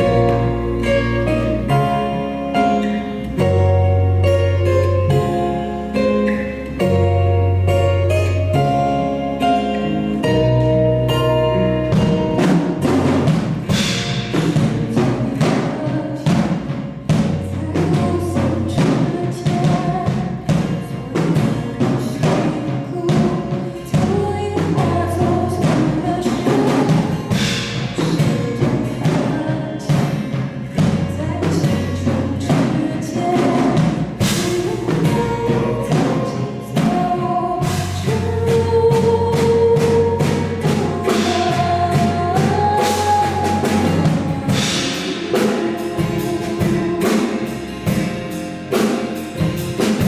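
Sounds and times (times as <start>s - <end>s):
live band music: 0.0s - 50.0s
shifting bass line: 0.0s - 50.0s
drum and percussion hits: 11.8s - 50.0s.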